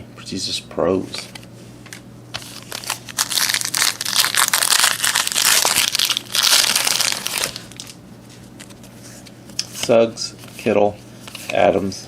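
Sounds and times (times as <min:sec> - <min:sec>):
plastic wrapper crinkling: 0:02.4 - 0:08.0.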